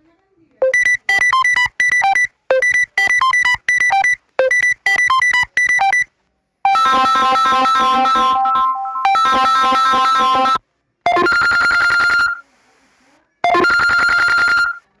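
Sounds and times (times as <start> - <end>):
fuller electronic tone with held notes: 6.7 - 10.6
quick bright electronic notes: 6.7 - 10.6.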